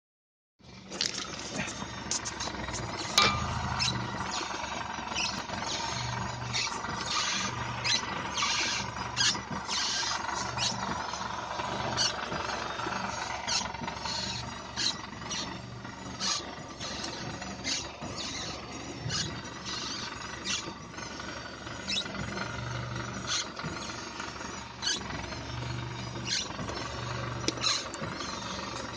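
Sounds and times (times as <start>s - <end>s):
suspension squeaking and creaking: 0.6s - 28.9s
low steady hum: 0.8s - 8.0s.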